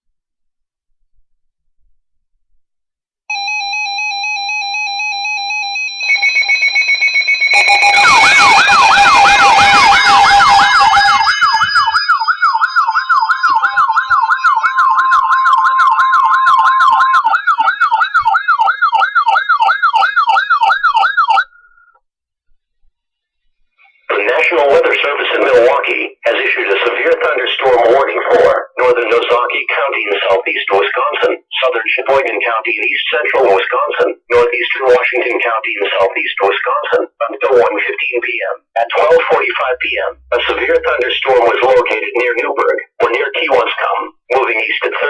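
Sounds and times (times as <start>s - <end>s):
electronic warbling alarm tones: 3.3s - 22.0s, 38.9s - 42.5s
steady alarm tone: 3.3s - 22.0s, 38.9s - 44.0s
steady beeping tones: 6.0s - 21.2s, 38.8s - 42.5s.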